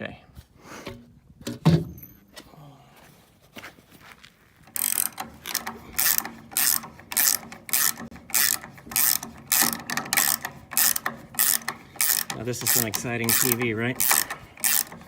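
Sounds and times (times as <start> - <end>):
ratchet wrench clicking: 4.7 - 15.0.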